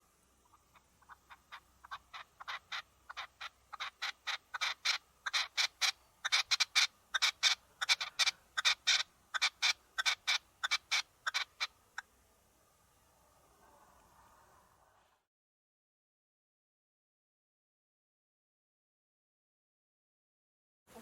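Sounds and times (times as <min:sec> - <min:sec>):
bird calling repeatedly: 0:00.4 - 0:12.1.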